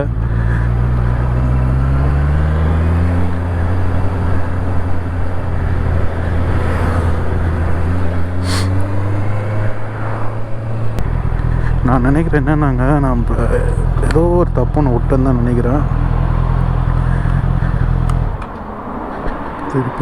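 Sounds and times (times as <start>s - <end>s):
motorcycle engine running: 0.0s - 9.2s, 11.0s - 19.3s
road and wind noise: 0.0s - 20.0s
brief hiss: 8.4s - 8.7s.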